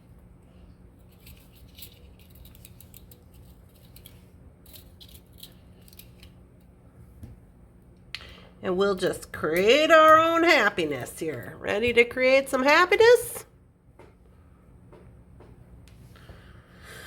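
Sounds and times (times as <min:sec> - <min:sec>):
low steady hum: 0:00.0 - 0:17.0
metal jewelry parts clinking: 0:01.0 - 0:06.3.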